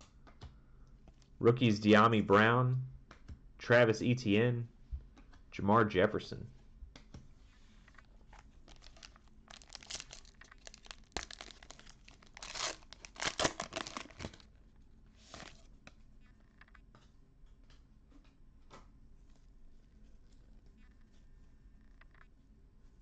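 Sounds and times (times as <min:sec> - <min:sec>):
wrapper tearing and crinkling: 0:08.7 - 0:14.5, 0:15.2 - 0:15.6.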